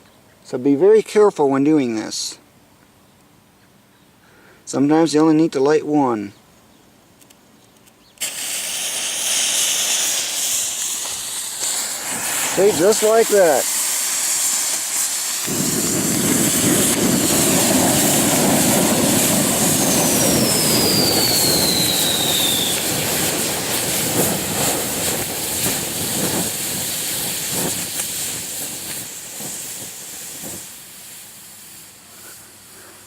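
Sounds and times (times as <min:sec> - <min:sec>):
smoke fireworks hissing sputter: 0:08.2 - 0:33.0
thin falling whistle: 0:19.5 - 0:23.3.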